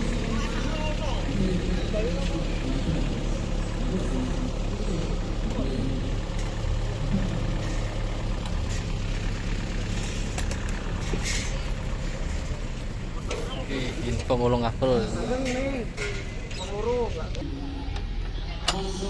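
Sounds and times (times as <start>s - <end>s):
low engine rumble: 0.0s - 19.0s
voices: 0.0s - 19.0s.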